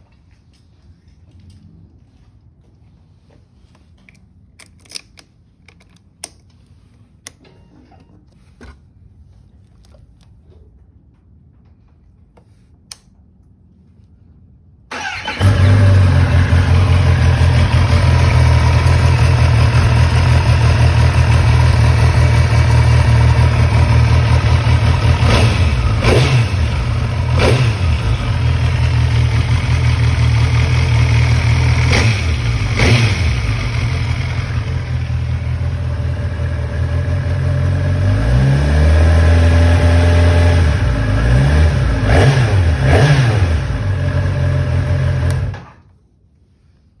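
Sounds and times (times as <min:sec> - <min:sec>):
motorcycle engine idling and revving: 0:14.9 - 0:45.8.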